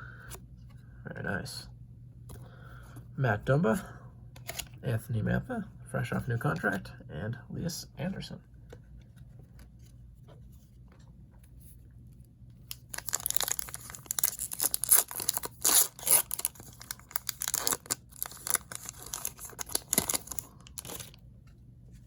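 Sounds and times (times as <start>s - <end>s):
wrapper ripping and crinkling: 12.7s - 21.2s.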